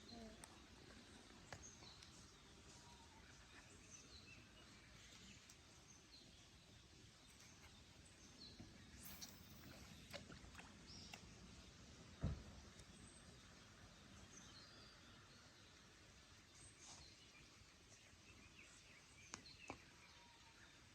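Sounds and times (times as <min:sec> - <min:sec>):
faint bird chirps: 0:00.0 - 0:06.4, 0:07.3 - 0:10.2.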